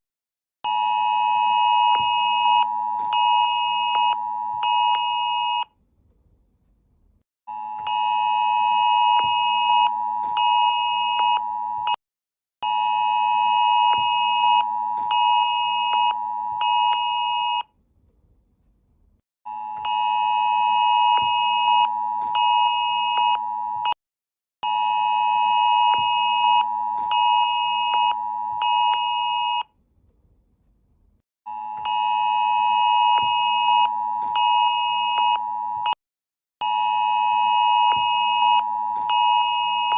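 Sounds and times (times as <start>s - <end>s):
harsh electronic alarm tone: 0.7s - 5.7s, 7.5s - 12.0s, 12.6s - 17.7s, 19.5s - 24.0s, 24.6s - 29.7s, 31.5s - 36.0s, 36.6s - 39.9s.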